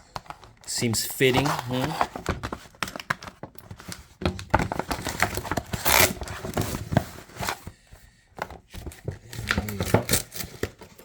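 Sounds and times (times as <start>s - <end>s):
cardboard tearing: 4.7s - 7.6s, 9.2s - 11.0s
knife cutting cardboard package: 4.7s - 7.6s, 9.0s - 11.0s.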